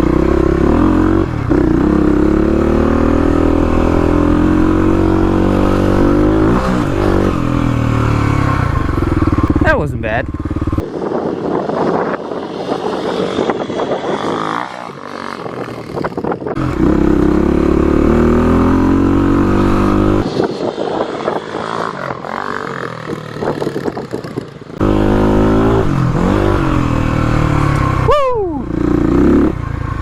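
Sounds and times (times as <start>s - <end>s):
dirt bike engine accelerating: 0.0s - 30.0s.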